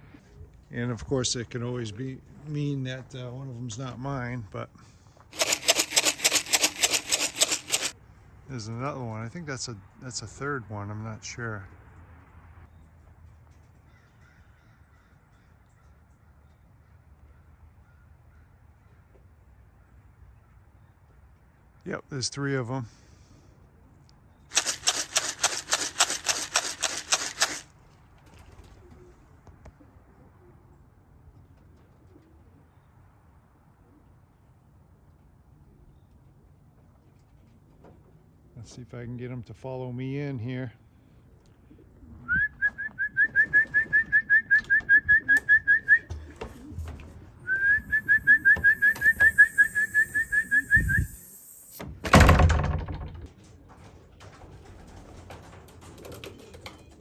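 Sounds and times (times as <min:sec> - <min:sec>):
pigeon wings flapping: 0:05.4 - 0:08.0, 0:24.5 - 0:29.1, 0:43.2 - 0:57.0
person whistling short rising notes: 0:42.3 - 0:46.1, 0:47.5 - 0:51.8
loud thump: 0:47.8 - 0:53.3.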